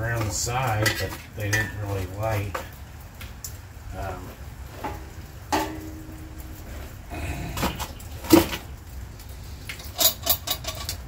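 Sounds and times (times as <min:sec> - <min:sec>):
cast iron pot clanking: 0:00.0 - 0:02.8, 0:04.7 - 0:09.0, 0:09.7 - 0:11.0.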